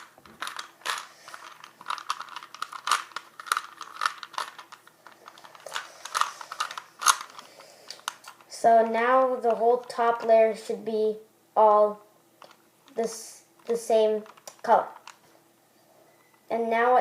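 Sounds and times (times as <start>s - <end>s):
puzzle cube clicking: 0.0s - 8.5s.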